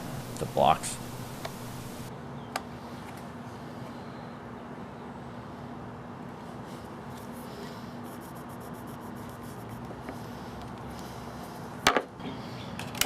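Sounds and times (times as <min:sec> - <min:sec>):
faint steady hum: 0:00.0 - 0:13.0
pencil scratching on wood: 0:08.0 - 0:10.2.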